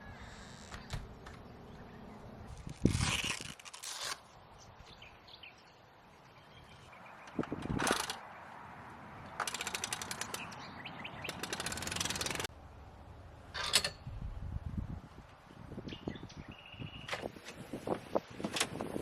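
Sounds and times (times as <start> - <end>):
fast ratchet clicks: 9.4 - 10.6, 11.2 - 12.5.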